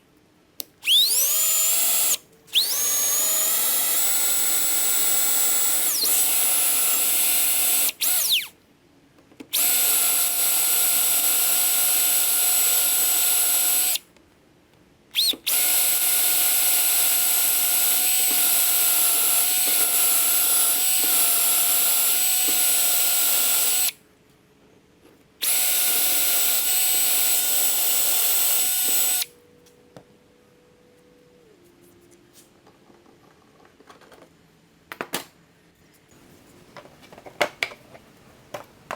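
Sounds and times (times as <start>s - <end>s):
electric drill whining: 0.8s - 8.5s, 9.5s - 14.0s, 15.2s - 24.0s, 25.4s - 29.3s.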